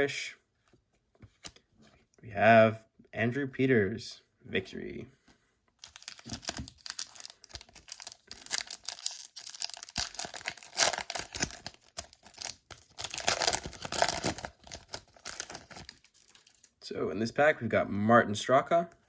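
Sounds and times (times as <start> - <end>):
card pack wrapper tearing and crinkling: 5.8 - 16.8.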